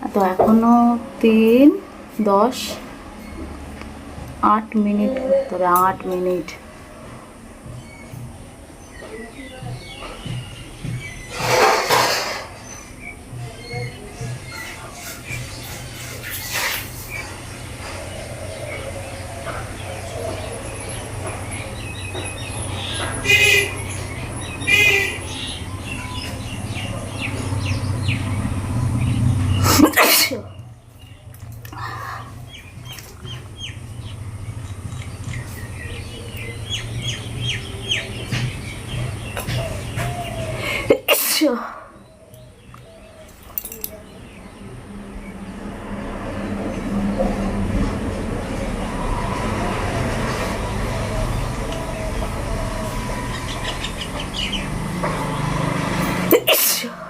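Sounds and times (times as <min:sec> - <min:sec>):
low outdoor rumble: 0:00.0 - 0:57.0
small birds chirping: 0:07.6 - 0:45.6, 0:50.4 - 0:56.3
person sneezing: 0:29.7 - 0:30.5, 0:56.3 - 0:57.0.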